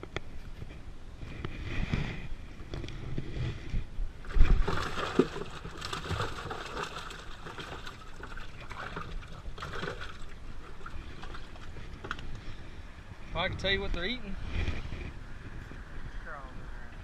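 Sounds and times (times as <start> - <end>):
water splashing against hull: 4.2 - 12.8.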